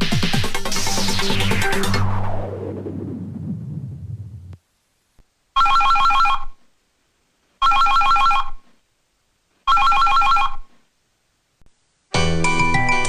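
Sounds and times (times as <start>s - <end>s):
mobile phone ringtone trill: 5.6s - 6.5s, 7.6s - 8.6s, 9.7s - 10.6s.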